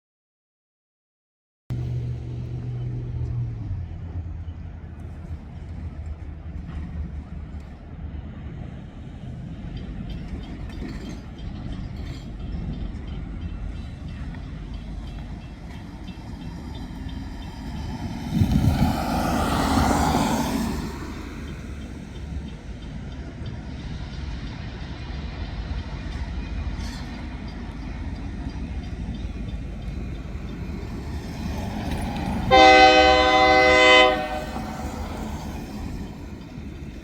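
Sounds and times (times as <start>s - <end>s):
freight train rumbling: 1.7s - 37.0s
vehicle passing close by: 17.8s - 22.1s.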